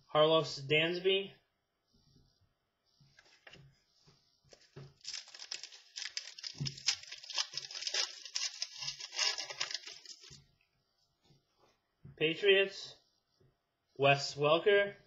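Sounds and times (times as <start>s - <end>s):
plastic packaging crinkling: 4.5s - 10.4s.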